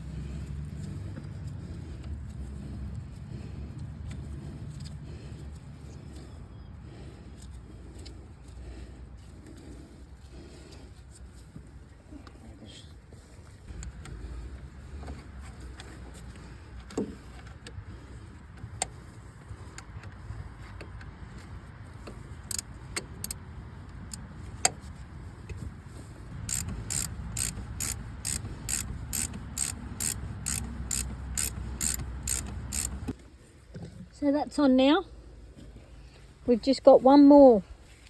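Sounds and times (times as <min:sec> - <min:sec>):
ratchet spanner clicking: 0:22.5 - 0:23.4, 0:26.4 - 0:33.1.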